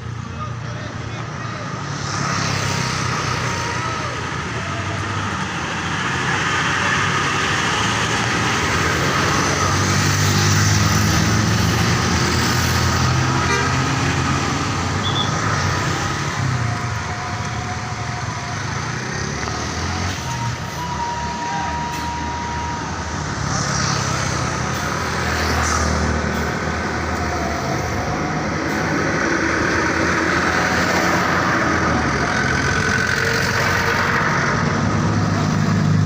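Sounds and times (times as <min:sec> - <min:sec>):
diesel bus engines running: 0:00.0 - 0:36.0
bus horn notes: 0:13.3 - 0:13.9.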